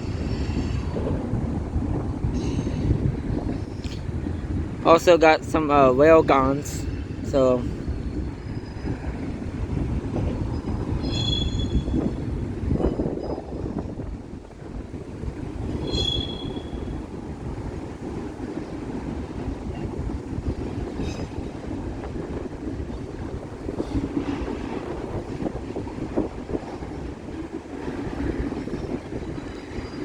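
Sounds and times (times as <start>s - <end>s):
high wheel squeal: 11.0s - 12.0s, 15.8s - 16.9s.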